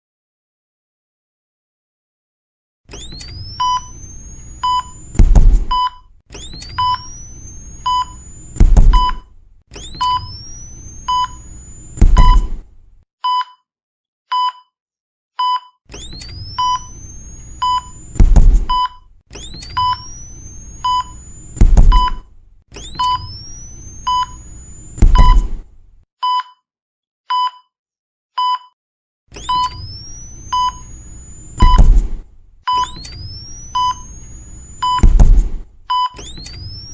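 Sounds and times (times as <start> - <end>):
defibrillator shock thump: 2.9 - 11.4, 12.0 - 12.7, 15.9 - 24.4, 25.0 - 25.7, 31.6 - 34.1, 34.8 - 36.9
heart monitor beeps: 2.9 - 12.6, 13.2 - 13.6, 14.3 - 14.7, 15.4 - 25.6, 26.2 - 26.6, 27.3 - 27.7, 28.4 - 28.8, 29.4 - 36.9
defibrillator charging whine: 2.9 - 12.7, 15.9 - 25.7, 29.3 - 36.9.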